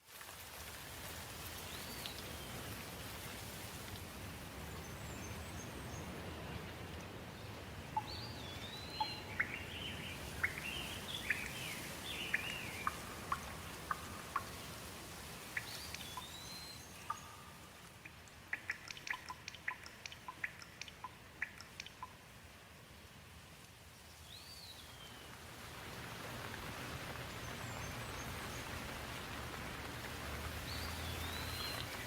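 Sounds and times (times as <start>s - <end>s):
rain hiss: 0.0s - 32.0s
songbird singing: 4.6s - 6.4s, 7.3s - 22.2s, 24.0s - 25.4s, 29.9s - 32.0s
sharp drips: 7.9s - 22.4s, 25.9s - 32.0s.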